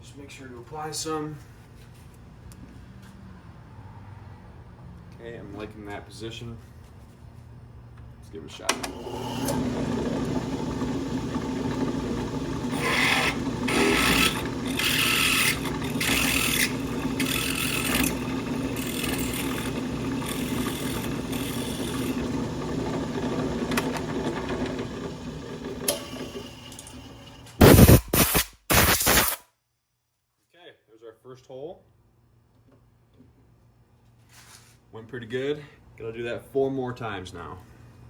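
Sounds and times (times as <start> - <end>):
drill press motor hum: 8.7 - 29.4
drill bit grinding aluminum: 8.9 - 29.4.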